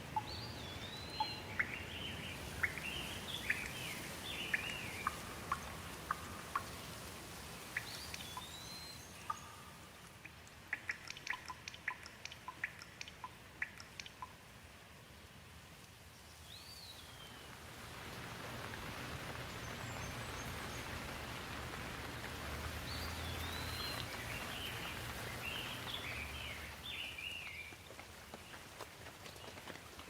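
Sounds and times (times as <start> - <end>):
steady rain falling: 0.0 - 30.0
bird chirping: 0.1 - 6.9, 7.7 - 14.4, 16.2 - 17.6, 22.7 - 27.8.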